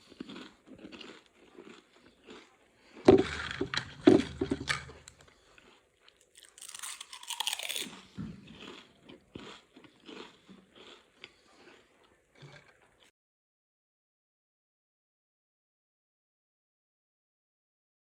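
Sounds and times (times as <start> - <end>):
chewing potato chips crunching: 0.0 - 3.8, 4.4 - 13.1.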